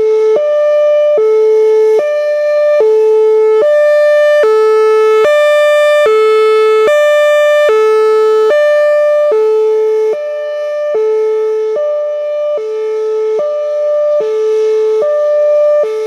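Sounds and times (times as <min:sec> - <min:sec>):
two-tone warning siren wail: 0:02.2 - 0:10.9.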